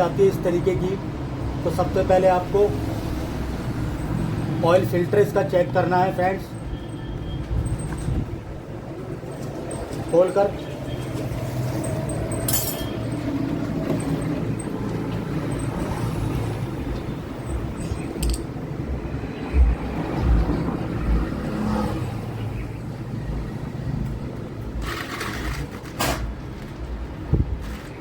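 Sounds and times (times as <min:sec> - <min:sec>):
metallic tool clicks: 0:17.8 - 0:18.5.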